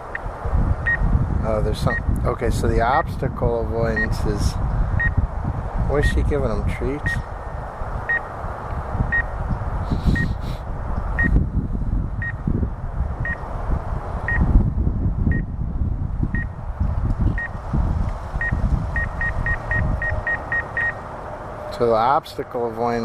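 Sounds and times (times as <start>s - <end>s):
loud uneven low rumbling: 0.0s - 22.4s
short high warning beeps: 18.4s - 21.0s.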